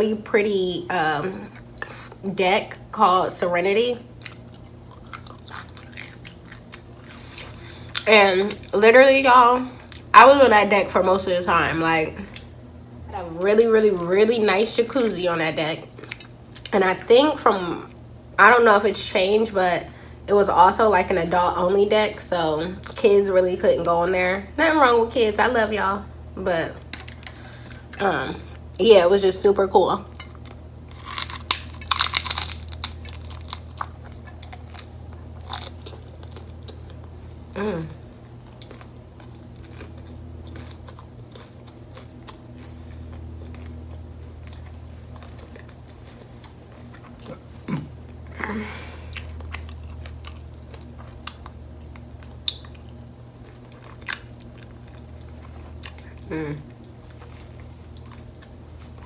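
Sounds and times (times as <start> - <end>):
chewing with mouth clicks: 4.1 - 8.7, 16.0 - 16.8, 30.1 - 48.2, 49.1 - 59.0
crunching bites: 30.3 - 36.5
person humming: 56.3 - 56.7.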